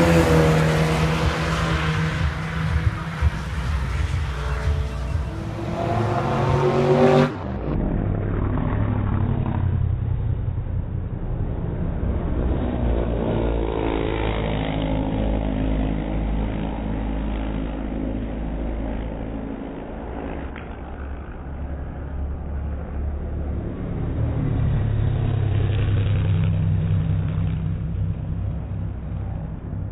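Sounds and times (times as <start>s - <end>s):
race car engines accelerating: 0.0s - 17.6s
low rumble: 0.0s - 29.9s.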